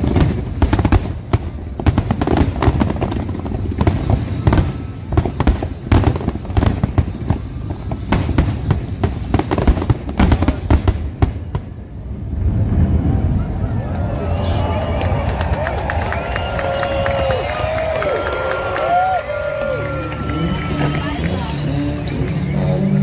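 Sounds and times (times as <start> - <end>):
fireworks bangs and crackles: 0.0 - 23.0
low rumble: 11.0 - 18.0.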